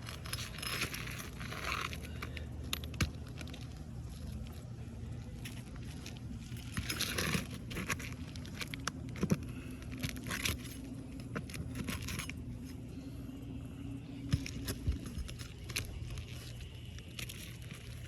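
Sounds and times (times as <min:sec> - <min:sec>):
shingles scraping and crinkling: 0:00.0 - 0:12.7
steady low hum: 0:00.0 - 0:18.0.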